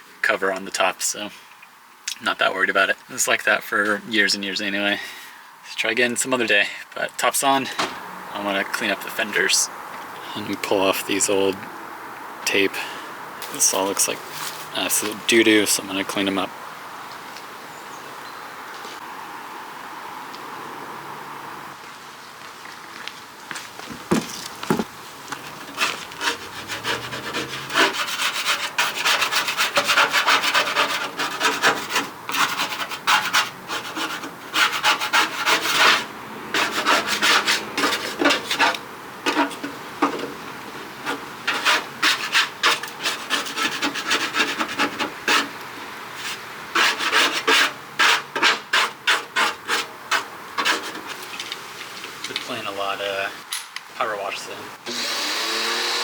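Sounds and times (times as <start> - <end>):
hand scraping tape off metal: 13.4 - 15.2, 23.8 - 40.4, 41.0 - 45.6, 46.2 - 52.4.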